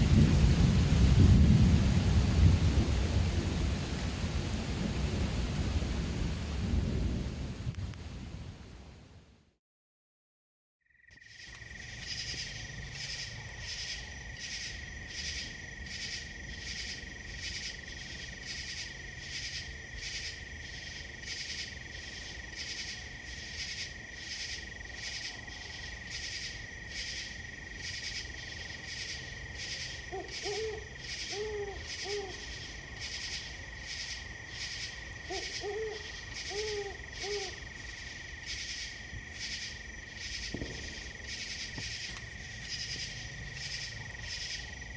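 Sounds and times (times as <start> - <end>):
cricket trill: 10.9 - 44.9
pulsing insect chirping: 10.9 - 44.9
owl hooting: 30.1 - 32.6, 35.2 - 37.8.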